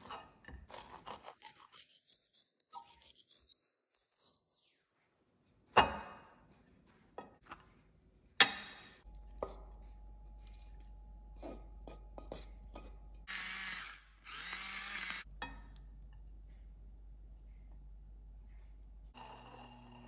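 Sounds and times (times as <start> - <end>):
kitchen appliance whirring: 13.3 - 15.3.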